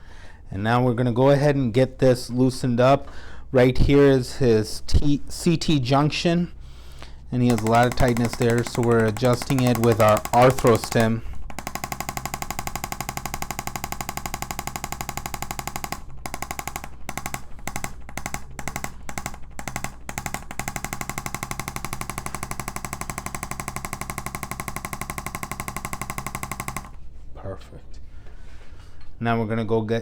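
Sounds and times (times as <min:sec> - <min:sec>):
rapid mechanical tapping: 0:07.5 - 0:27.0.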